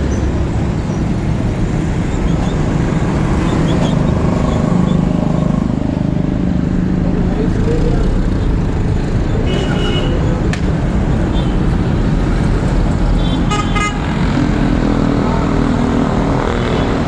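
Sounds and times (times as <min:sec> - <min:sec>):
road traffic rumble: 0:00.0 - 0:17.0
car horn toots: 0:09.5 - 0:10.2, 0:13.2 - 0:14.2.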